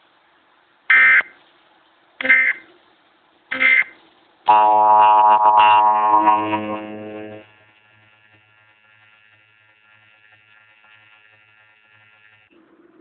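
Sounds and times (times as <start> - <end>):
faint high-pitched hum: 0.0 - 7.8
two-tone alarm signal: 4.5 - 7.5.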